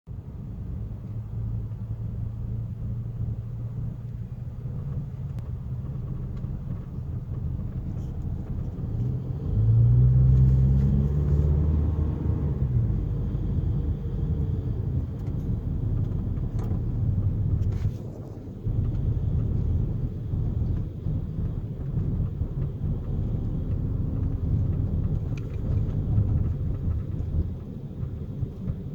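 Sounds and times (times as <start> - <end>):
low droning rumble with hum: 0.1 - 28.9.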